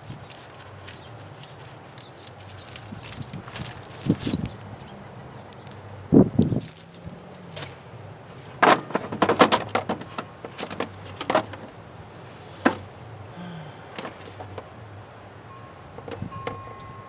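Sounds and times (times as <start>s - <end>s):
hand tools clinking and knocking: 0.0s - 4.5s, 8.5s - 11.7s, 14.0s - 14.7s.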